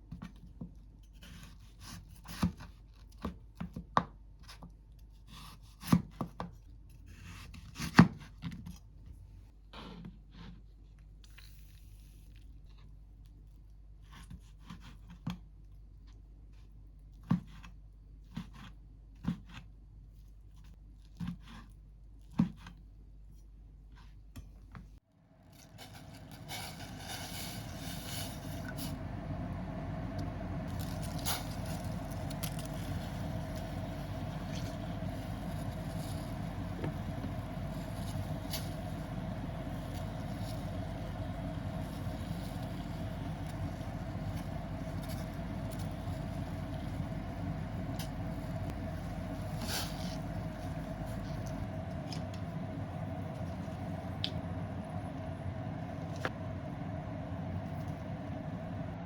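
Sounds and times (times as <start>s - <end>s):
steady rushing noise with hum: 25.8s - 59.0s.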